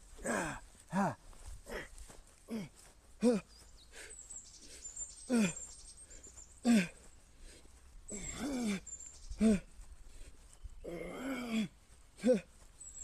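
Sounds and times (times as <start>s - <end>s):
man straining breath: 0.0s - 12.8s
man grunting with effort: 0.2s - 1.9s, 2.5s - 3.5s, 5.3s - 5.6s, 6.6s - 7.0s, 8.1s - 9.7s, 10.8s - 12.5s.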